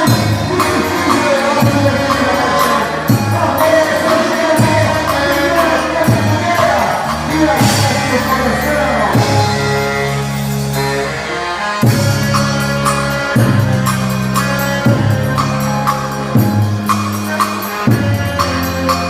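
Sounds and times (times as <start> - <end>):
low drum beat: 0.0 - 10.1
music with singing: 0.0 - 19.0.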